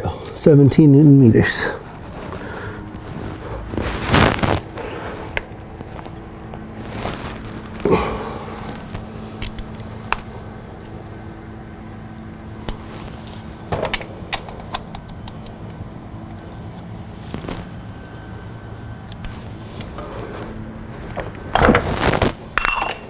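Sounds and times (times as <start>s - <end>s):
steady low hum: 0.0s - 23.0s
metallic clinks of hand tools: 22.6s - 23.0s.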